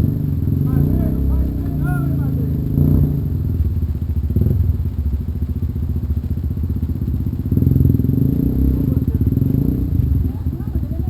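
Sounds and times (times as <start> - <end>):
dirt bike engine running: 0.0 - 11.0.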